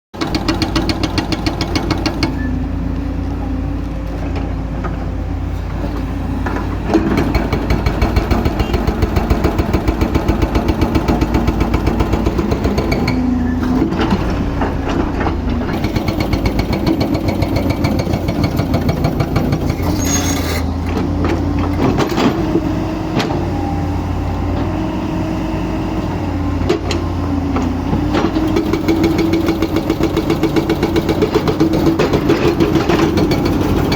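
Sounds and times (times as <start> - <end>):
diesel engine under load: 0.2 - 33.9.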